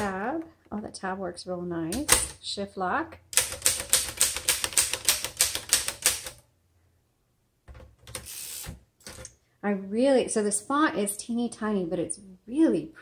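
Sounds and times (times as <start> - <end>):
typewriter keystrokes: 3.4 - 6.4.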